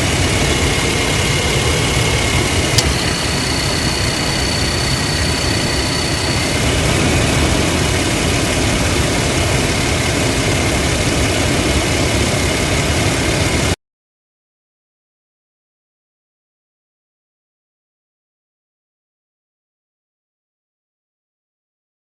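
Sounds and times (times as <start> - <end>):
high-pitched cricket-like tone: 0.0 - 9.1
thin high tone: 0.0 - 9.8
engine idling: 0.0 - 13.8
sharp click: 2.7 - 3.0.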